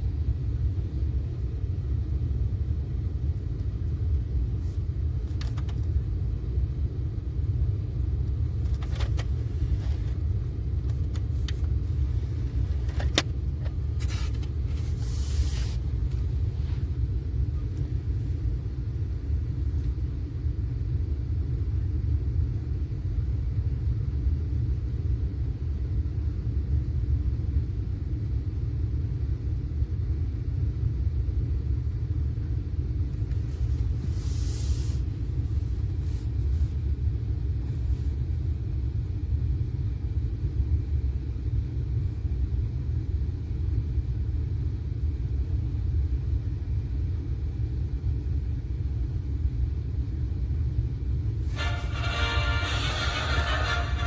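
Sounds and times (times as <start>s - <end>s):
steady low rumble: 0.0s - 54.0s
music: 51.5s - 54.0s.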